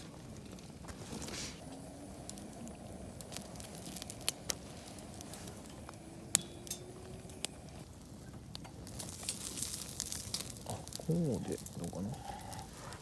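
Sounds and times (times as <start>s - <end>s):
sharp fire pops: 0.0s - 7.8s, 8.5s - 13.0s
campfire crackling: 0.0s - 13.0s.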